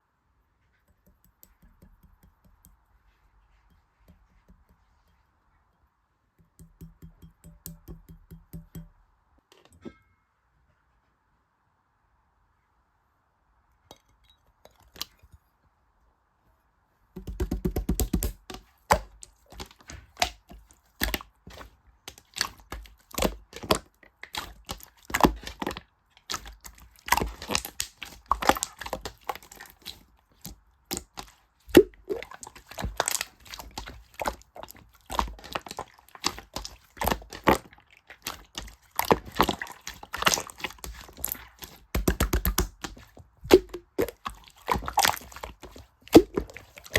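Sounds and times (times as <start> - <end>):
sharp clicks and taps: 0.9 - 2.8, 6.4 - 9.0
hard objects being handled: 17.2 - 46.9.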